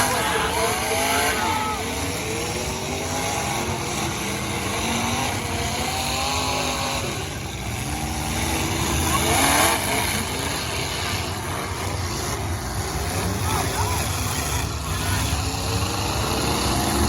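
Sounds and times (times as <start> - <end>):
car engines revving: 0.0 - 17.0.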